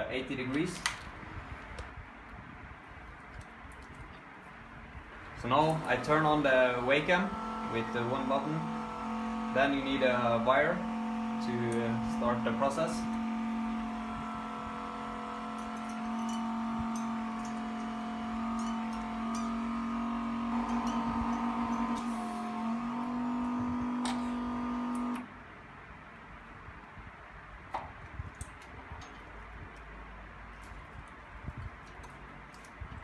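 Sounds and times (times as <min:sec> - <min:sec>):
electric motor humming: 0:05.3 - 0:25.3.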